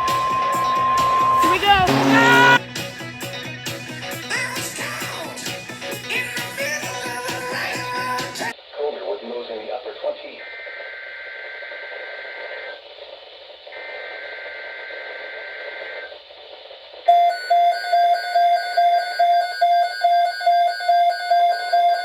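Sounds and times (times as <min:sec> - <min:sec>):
loud alarm beeping: 0:00.0 - 0:02.6, 0:17.1 - 0:22.0
buzzy two-tone data bursts: 0:00.5 - 0:02.6.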